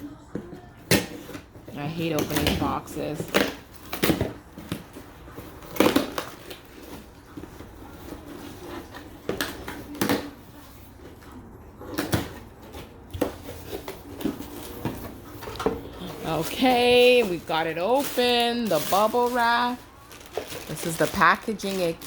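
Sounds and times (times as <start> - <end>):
cardboard tearing and rustling: 2.2 - 11.0, 11.9 - 22.0.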